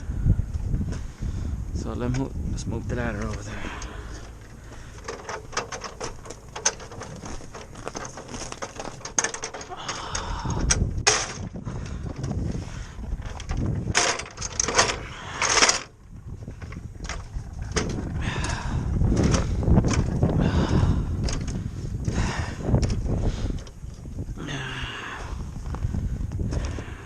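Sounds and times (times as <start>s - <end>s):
low rumble: 0.0s - 27.0s
ladder knocking and scraping: 3.1s - 20.3s.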